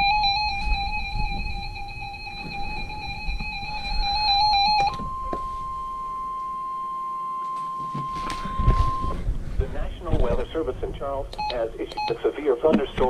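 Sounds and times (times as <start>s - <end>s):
buzzy warbling alarm tone: 0.0s - 9.2s.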